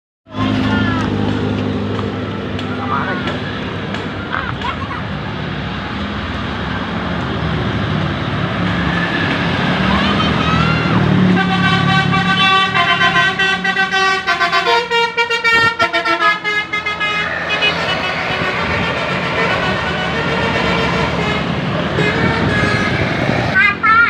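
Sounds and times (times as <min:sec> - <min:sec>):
people's voices: 0:00.3 - 0:06.2, 0:09.7 - 0:11.2
bus engine running: 0:00.3 - 0:24.0
air horns playing a tune: 0:11.3 - 0:23.1.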